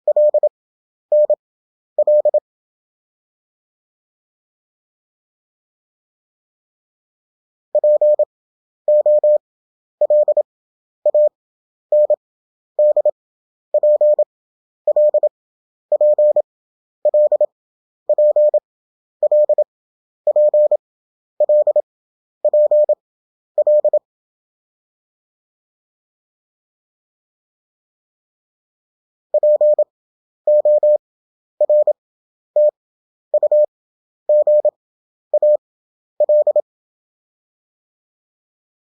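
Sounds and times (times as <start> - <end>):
morse code beeps: 0.1 - 0.5, 1.1 - 1.4, 2.0 - 2.4, 7.8 - 8.3, 8.9 - 9.4, 10.0 - 10.5, 11.1 - 12.2, 12.8 - 13.2, 13.8 - 14.3, 14.9 - 15.3, 15.9 - 16.4, 17.1 - 17.5, 18.1 - 18.6, 19.2 - 19.6, 20.3 - 20.8, 21.4 - 21.8, 22.4 - 23.0, 23.6 - 24.0, 29.4 - 29.9, 30.5 - 31.0, 31.6 - 32.0, 32.6 - 32.8, 33.4 - 33.7, 34.3 - 34.8, 35.4 - 35.6, 36.2 - 36.7.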